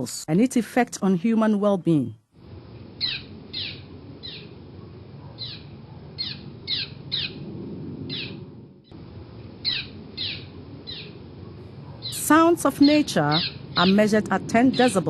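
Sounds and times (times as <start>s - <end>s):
low outdoor ambience: 0.0s - 15.0s
birds chirping: 2.8s - 8.6s, 9.2s - 15.0s.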